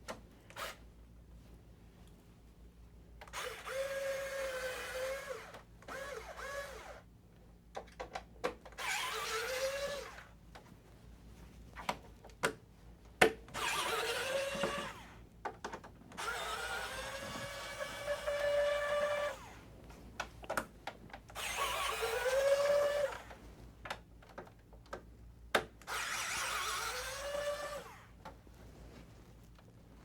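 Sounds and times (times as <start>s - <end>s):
electric screwdriver whining: 3.3s - 7.0s, 8.8s - 10.3s, 13.6s - 15.1s, 16.2s - 19.5s, 21.4s - 23.4s, 25.9s - 28.0s.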